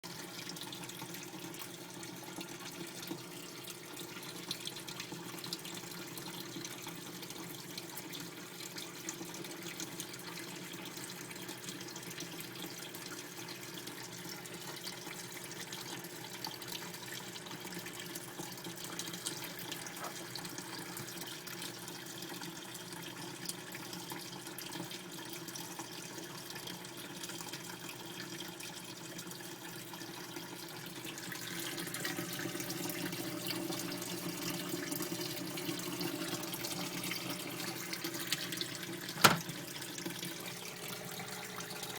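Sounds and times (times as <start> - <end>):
water running: 0.1 - 23.7, 28.2 - 41.9.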